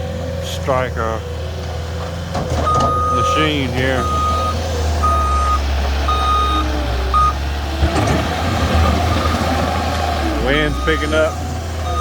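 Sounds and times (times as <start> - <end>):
diesel engine running: 0.0 - 12.0
backup alarm beeping: 2.6 - 7.4, 10.7 - 12.0.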